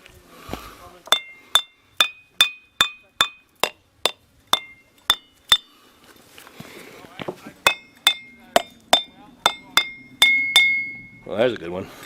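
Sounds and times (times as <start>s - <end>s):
ringing rock struck: 1.1s - 5.7s, 7.7s - 11.3s.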